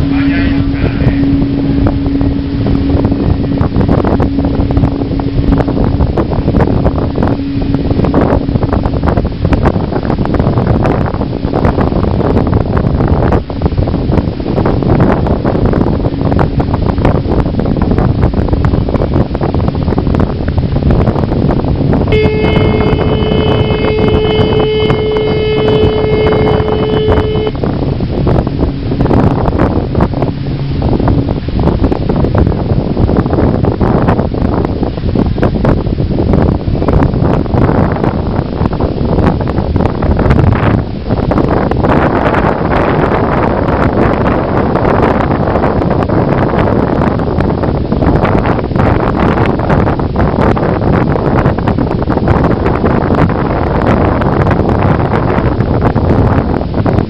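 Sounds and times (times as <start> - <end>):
ship engine humming: 0.0 - 12.2, 13.6 - 34.5
wind buffeting microphone: 0.0 - 57.0.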